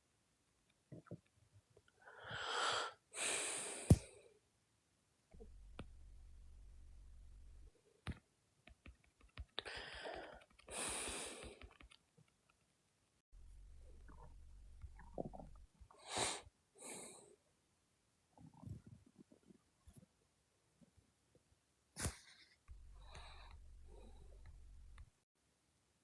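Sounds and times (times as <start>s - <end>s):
man breathing: 22.8s - 25.0s.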